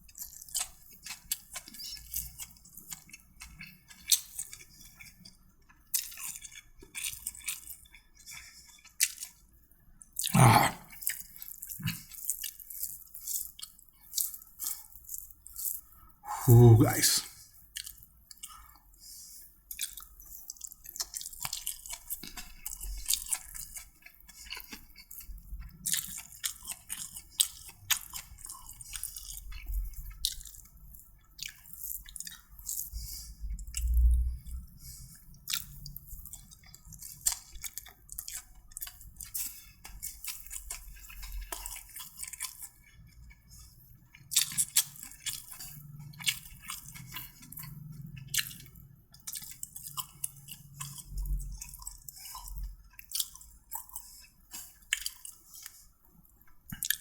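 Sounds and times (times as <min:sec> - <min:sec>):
person chewing food: 0:00.0 - 0:57.0.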